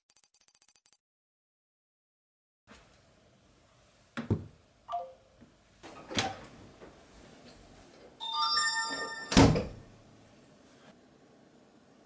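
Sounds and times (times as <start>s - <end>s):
falling electronic chime: 8.2s - 9.5s.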